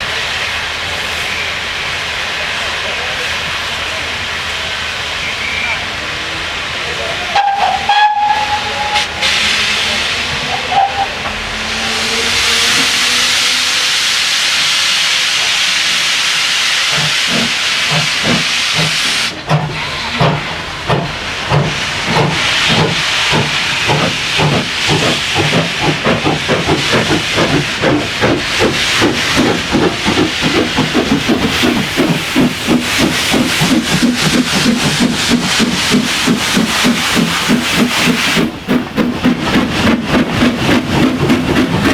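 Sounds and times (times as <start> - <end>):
steam hissing: 0.0 - 41.9
steam locomotive whistle: 7.1 - 14.1
locomotive exhaust chuffs: 16.8 - 41.9.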